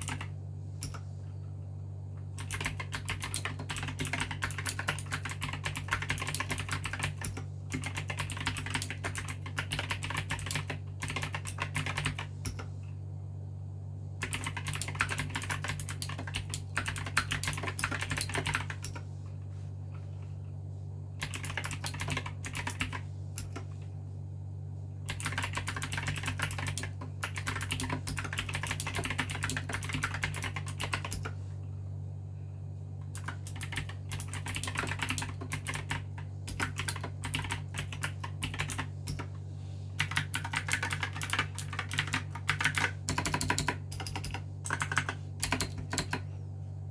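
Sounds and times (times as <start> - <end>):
mechanical keyboard typing: 0.0 - 1.0, 2.4 - 12.7, 14.2 - 19.0, 21.2 - 23.7, 25.1 - 31.4, 33.1 - 39.3, 40.0 - 46.3
steady low hum: 0.0 - 46.9.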